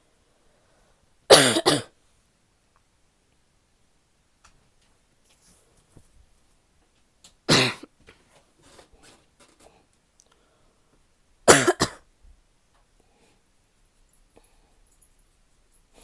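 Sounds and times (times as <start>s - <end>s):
woman coughing: 1.3s - 1.9s, 7.5s - 7.9s, 11.5s - 12.0s.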